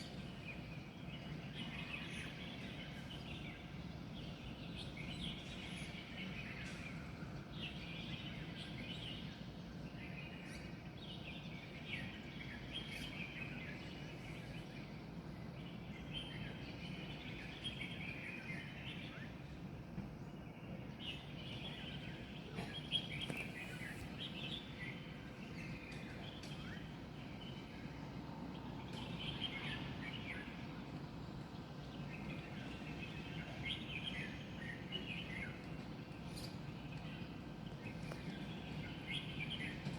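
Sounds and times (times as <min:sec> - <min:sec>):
low city hum: 0:00.0 - 0:39.9
small birds chirping: 0:21.1 - 0:27.7.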